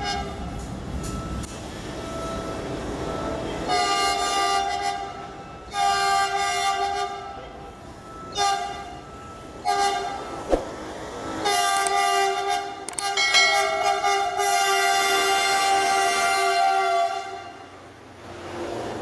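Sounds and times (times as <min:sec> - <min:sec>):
train horn blasts: 0:00.0 - 0:00.5, 0:03.7 - 0:07.4, 0:08.3 - 0:09.0, 0:09.6 - 0:10.4, 0:11.3 - 0:17.8
passing train rumble: 0:00.0 - 0:19.0.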